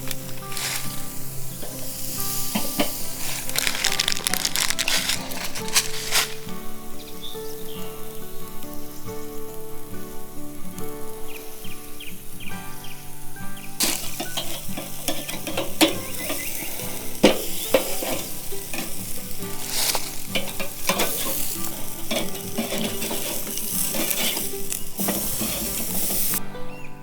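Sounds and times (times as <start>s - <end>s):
food sizzling in a pan: 0.0s - 26.4s
utensil clicking against pan: 13.8s - 26.4s.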